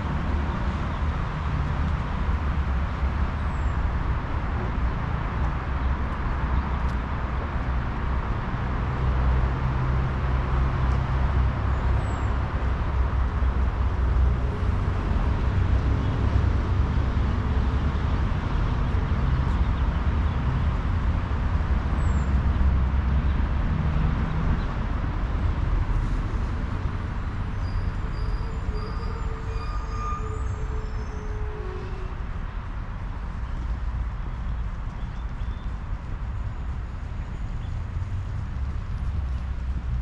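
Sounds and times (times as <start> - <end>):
distant road traffic rumble: 0.0 - 40.0.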